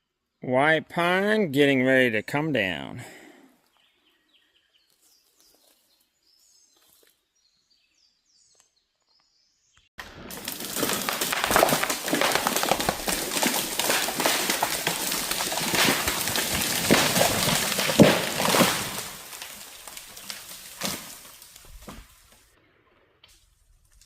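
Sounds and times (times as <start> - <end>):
tree branches cracking and snapping: 10.0 - 22.4.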